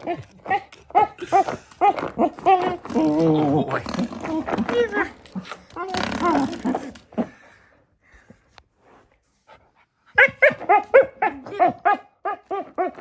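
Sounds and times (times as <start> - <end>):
puppy barking: 0.0 - 2.1, 10.2 - 13.0.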